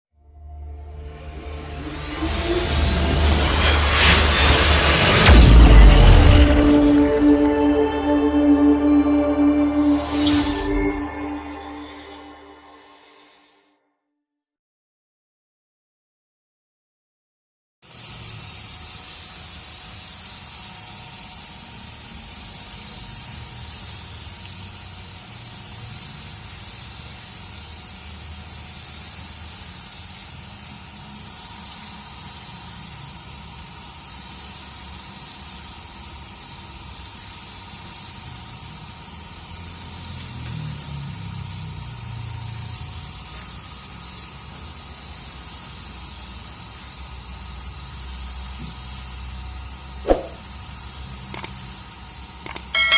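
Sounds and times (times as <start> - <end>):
low rumble: 1.1 - 12.7
paint spray gun hissing: 17.9 - 41.1, 41.8 - 49.4, 50.1 - 52.7.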